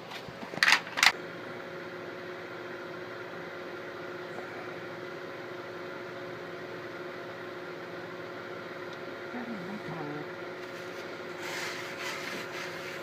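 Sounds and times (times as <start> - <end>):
appliance motor humming: 1.0 - 13.0.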